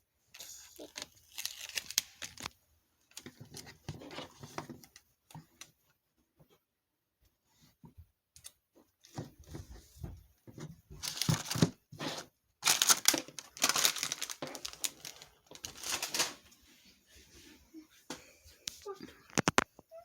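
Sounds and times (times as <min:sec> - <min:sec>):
wrapper crinkling and tearing: 0:00.4 - 0:03.7, 0:11.0 - 0:16.4.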